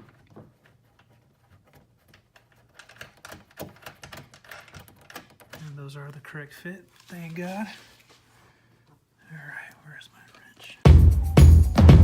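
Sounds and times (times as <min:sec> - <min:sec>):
small metal hardware rattling: 0:01.6 - 0:05.8.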